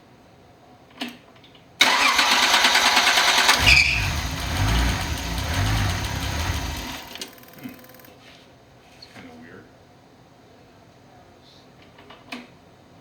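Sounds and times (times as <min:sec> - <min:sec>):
engine running at fast idle: 0:01.8 - 0:08.0
starter motor cranking: 0:01.8 - 0:08.1.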